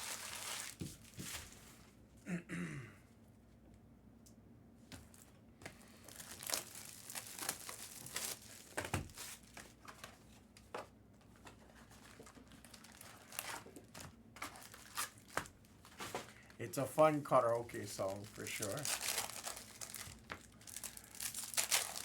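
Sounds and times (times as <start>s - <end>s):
foil wrappers crinkling and tearing: 0.0s - 1.6s, 5.1s - 10.1s, 11.7s - 22.0s.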